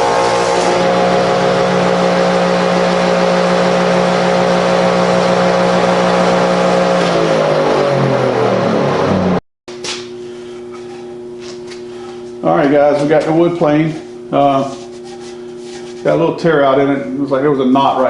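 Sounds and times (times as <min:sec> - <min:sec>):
planer motor coasting down: 0:00.0 - 0:09.4
planer running: 0:00.0 - 0:16.8.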